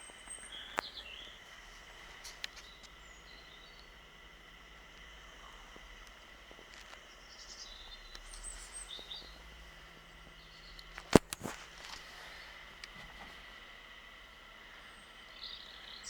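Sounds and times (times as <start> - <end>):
sharp clicks: 0.0 - 9.4, 10.6 - 12.1
birds chirping faintly: 0.0 - 16.0.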